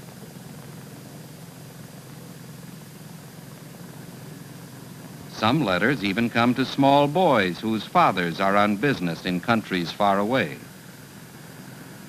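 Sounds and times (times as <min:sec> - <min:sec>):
even hiss: 0:00.0 - 0:12.0
steady low drone: 0:03.8 - 0:12.0.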